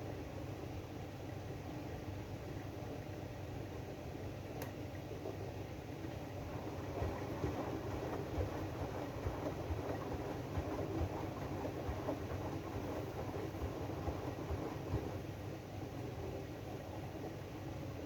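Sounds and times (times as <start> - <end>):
washing machine drum rumbling: 6.5 - 15.2.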